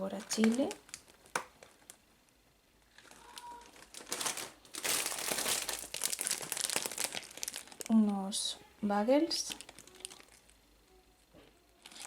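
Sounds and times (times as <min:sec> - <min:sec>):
plastic packaging crinkling: 0:00.0 - 0:02.0, 0:02.8 - 0:08.6, 0:09.3 - 0:10.6, 0:11.7 - 0:12.0.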